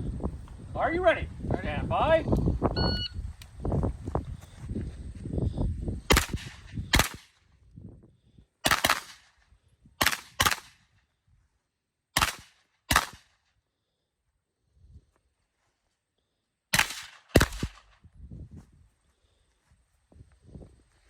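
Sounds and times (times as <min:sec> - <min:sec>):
gunshots: 0:06.1 - 0:07.3, 0:08.6 - 0:09.2, 0:10.0 - 0:10.8, 0:12.2 - 0:13.3, 0:16.7 - 0:17.9.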